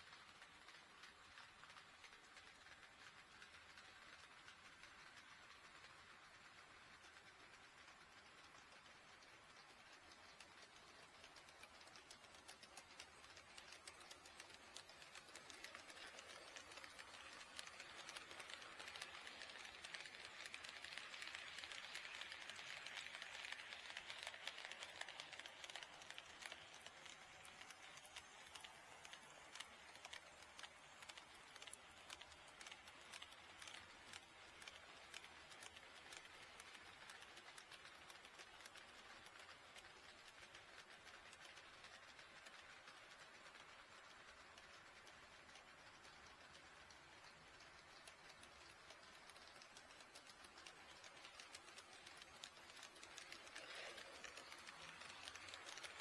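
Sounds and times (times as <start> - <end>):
model train whirring on track: 0.0 - 56.0.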